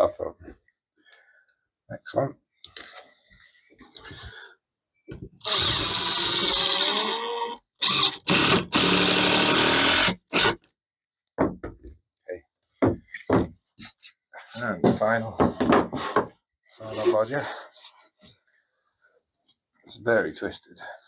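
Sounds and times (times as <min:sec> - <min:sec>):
power drill driving screw into wood: 0:05.4 - 0:10.7.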